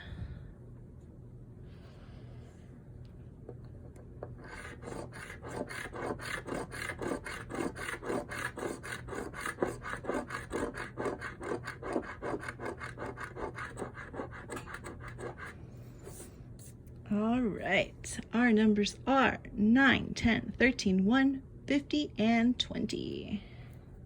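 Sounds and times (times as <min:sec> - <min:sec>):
scratching lottery ticket: 0:04.4 - 0:16.3.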